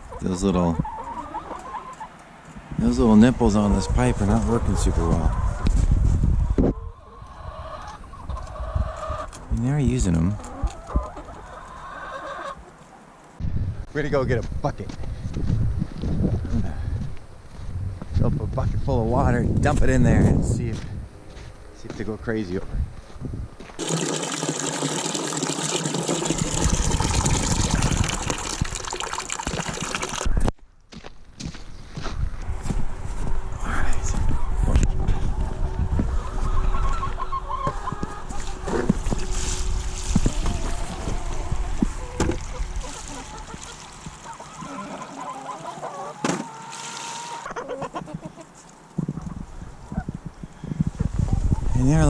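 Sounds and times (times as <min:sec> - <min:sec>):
chickens clucking: 0:00.0 - 0:02.6, 0:03.6 - 0:09.4, 0:10.2 - 0:13.1, 0:34.2 - 0:50.2
tap water gushing into bucket: 0:23.8 - 0:30.3, 0:42.0 - 0:45.7.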